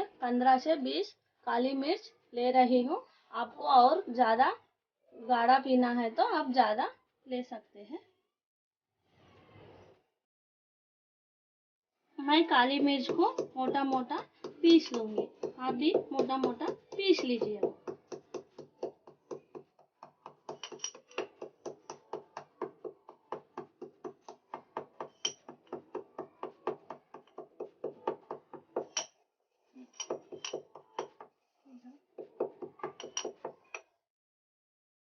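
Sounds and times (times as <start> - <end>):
pestle pounding peppercorns: 13.0 - 29.1, 32.2 - 33.8.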